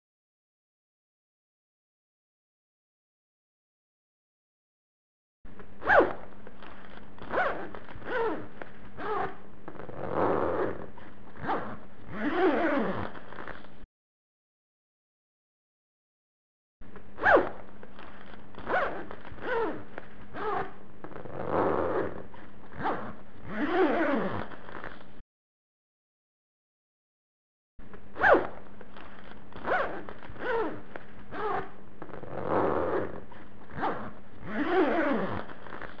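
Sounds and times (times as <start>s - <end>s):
zipper zipping: 5.5s - 13.9s, 16.9s - 25.2s, 27.9s - 36.0s.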